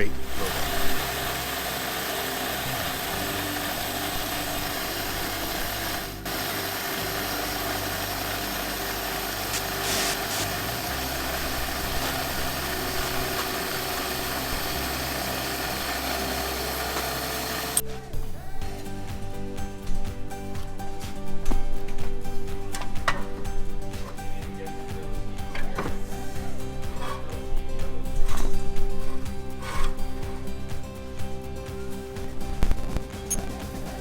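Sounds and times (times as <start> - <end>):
brake lathe motor tone: 0.0 - 17.8
cutting bits scraping metal: 0.0 - 17.8
music: 0.0 - 34.0.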